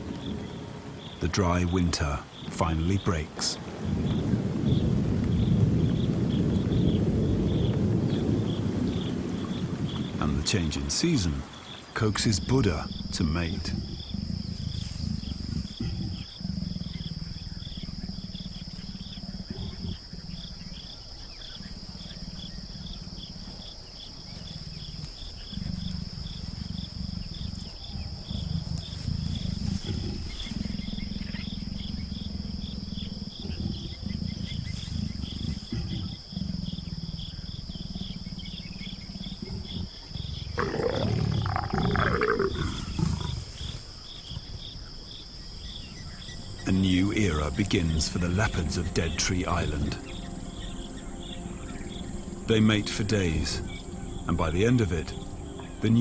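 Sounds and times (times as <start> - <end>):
insects chirring: 0.0 - 56.0
leopards growling: 8.5 - 56.0
leopard snarl: 12.2 - 45.2.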